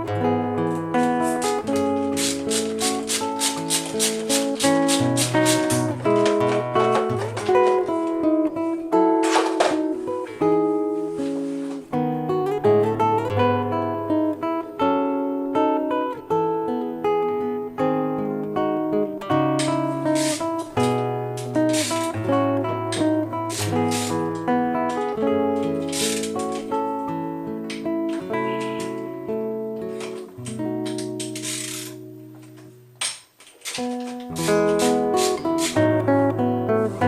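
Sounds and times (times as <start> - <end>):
plucked acoustic guitar: 0.0 - 37.0
rhythmic shaker: 0.7 - 8.3, 19.6 - 26.8, 33.7 - 37.0.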